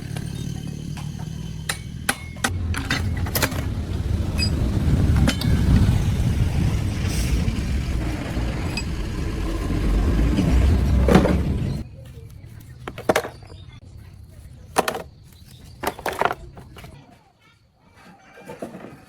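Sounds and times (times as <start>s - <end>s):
machine low rumble: 0.0s - 11.8s.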